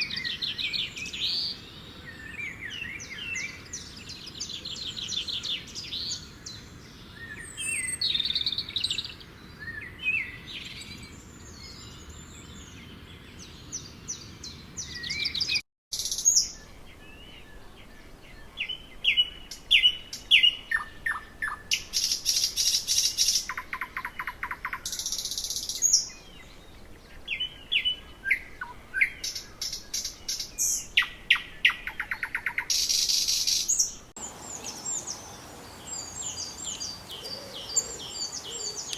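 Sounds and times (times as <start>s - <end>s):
songbirds singing: 0.0s - 38.9s
faint background hiss: 32.7s - 38.9s.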